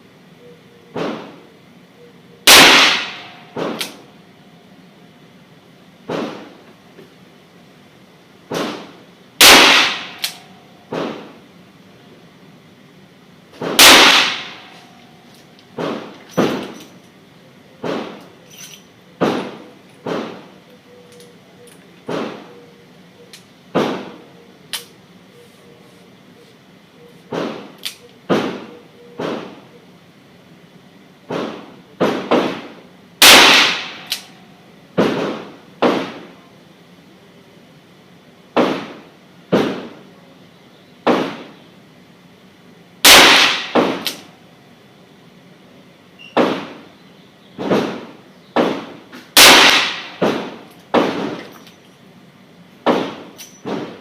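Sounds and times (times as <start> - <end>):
faint distant gunshots: 2.5 - 3.8, 47.6 - 51.4
loud close handgun shots: 2.5 - 3.9, 8.5 - 11.3, 13.6 - 14.7, 31.3 - 34.2, 43.0 - 44.2, 47.6 - 51.4.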